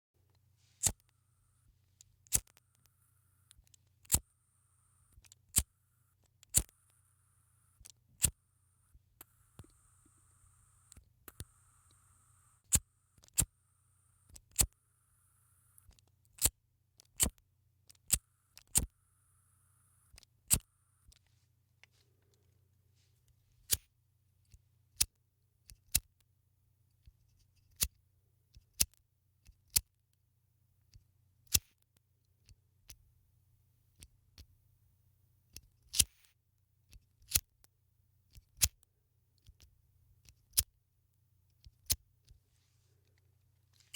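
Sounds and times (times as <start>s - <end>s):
lighter clicking: 2.3s - 2.6s, 18.1s - 18.9s.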